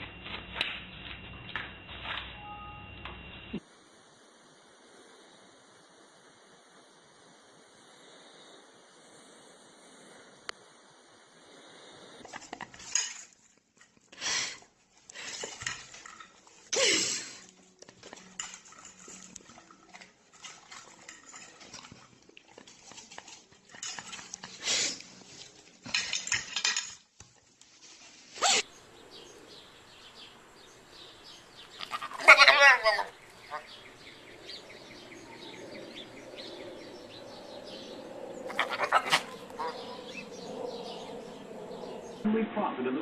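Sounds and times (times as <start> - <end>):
dishes clattering and clinking: 17.9 - 24.6, 25.8 - 27.0.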